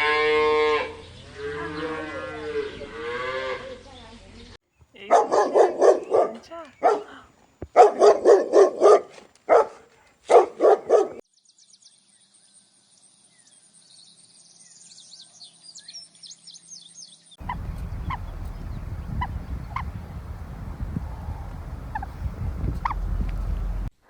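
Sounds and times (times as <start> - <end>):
animal calls: 5.0 - 11.2, 17.4 - 23.9
faint high bird chirping: 13.3 - 23.9
low outdoor rumble: 17.4 - 23.9
faint clicks: 21.4 - 23.9.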